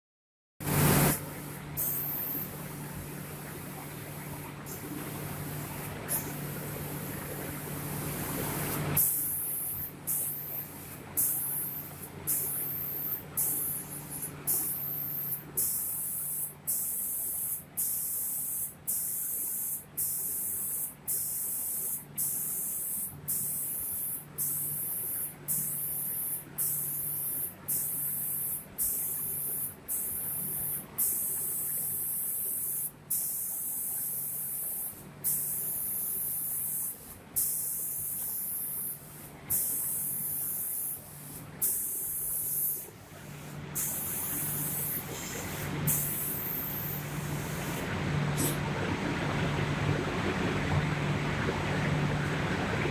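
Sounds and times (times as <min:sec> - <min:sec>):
low machine hum: 0:00.6 - 0:52.9
spray guns hissing: 0:08.7 - 0:42.9, 0:43.8 - 0:47.8.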